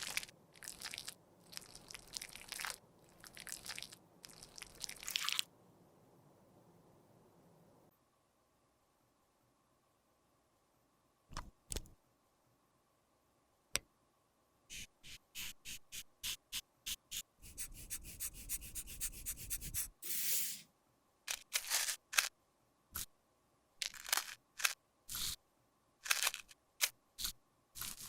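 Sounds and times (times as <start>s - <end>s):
tools scraping: 14.8s - 20.6s.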